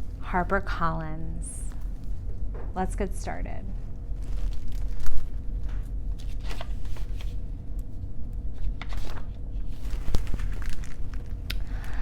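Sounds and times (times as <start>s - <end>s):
paper rustling: 4.2s - 7.4s, 8.6s - 11.4s.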